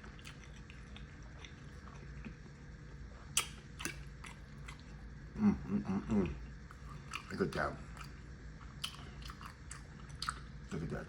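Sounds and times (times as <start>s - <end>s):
person chewing: 0.0s - 2.6s, 3.2s - 5.1s, 6.2s - 10.6s
wet mouth clicks and smacks: 3.4s - 4.8s, 8.8s - 10.5s.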